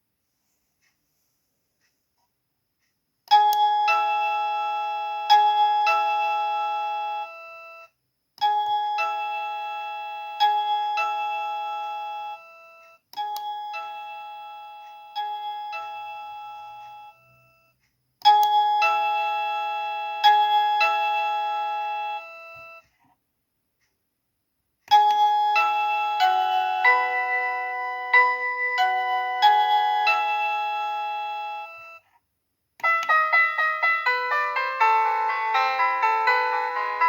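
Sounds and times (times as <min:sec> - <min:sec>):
doorbell chime melody: 0:03.3 - 0:07.9, 0:25.2 - 0:32.0, 0:32.8 - 0:37.0.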